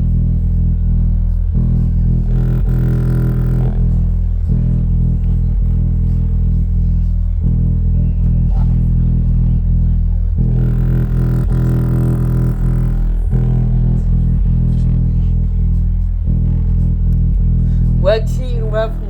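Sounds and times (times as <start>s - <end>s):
bass-heavy music through speaker: 0.0s - 19.0s.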